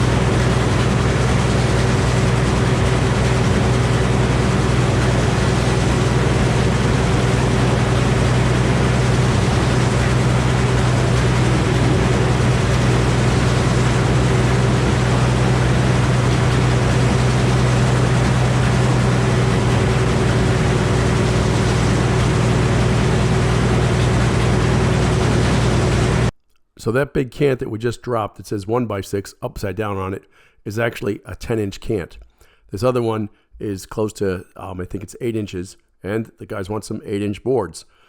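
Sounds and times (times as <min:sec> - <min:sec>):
sawmill running: 0:00.0 - 0:26.3.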